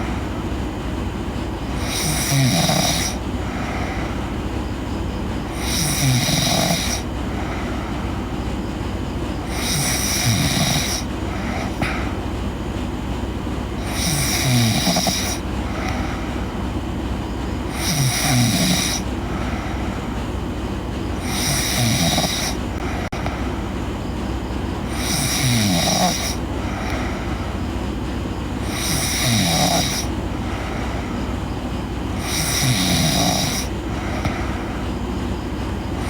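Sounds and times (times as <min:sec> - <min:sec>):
steady low hum: 0:00.0 - 0:36.0
girl snoring: 0:01.8 - 0:04.2, 0:05.5 - 0:07.5, 0:09.5 - 0:12.2, 0:13.8 - 0:16.2, 0:17.7 - 0:19.1, 0:21.2 - 0:23.3, 0:24.9 - 0:27.2, 0:28.6 - 0:31.0, 0:32.2 - 0:34.6.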